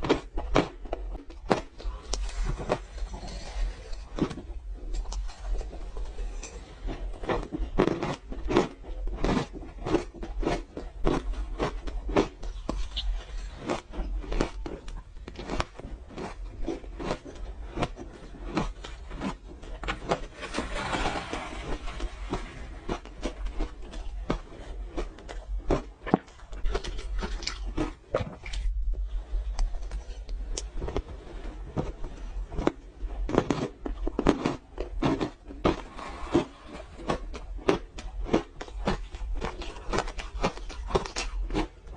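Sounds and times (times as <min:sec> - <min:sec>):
crunching frozen ice: 0:31.9 - 0:41.9.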